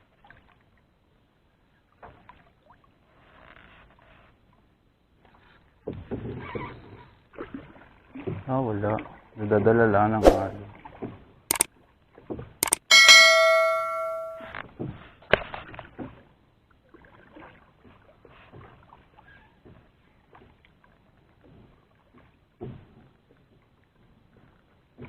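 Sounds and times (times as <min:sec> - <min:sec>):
sharp clicks: 0:12.6 - 0:12.9
bell-like metallic ring: 0:12.7 - 0:14.5.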